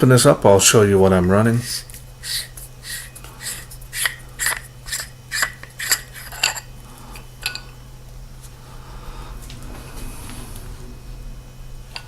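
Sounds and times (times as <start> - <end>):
metal threads scraping: 1.3 - 7.8.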